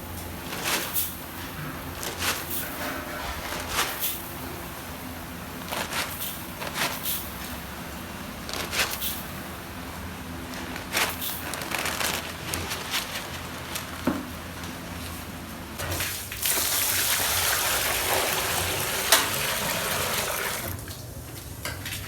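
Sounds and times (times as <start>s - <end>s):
food preparation clicks and rustles: 0.0s - 16.4s, 20.7s - 22.0s.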